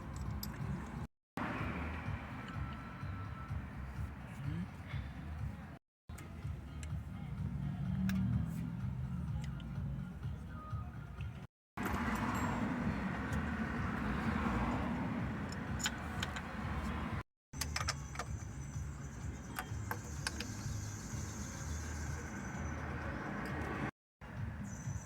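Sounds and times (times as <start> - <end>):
metal tools clinking: 11.8 - 13.5.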